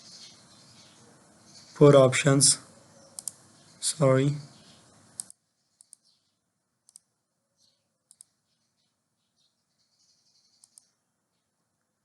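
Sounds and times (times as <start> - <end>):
computer mouse double clicks: 3.2 - 3.4, 5.2 - 6.1.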